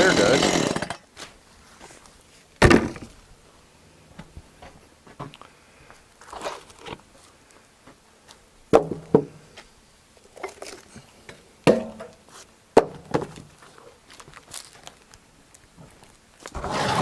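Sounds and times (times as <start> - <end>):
rustle: 0.8 - 4.6, 9.3 - 17.0
wood knocks and thumps: 2.6 - 3.2.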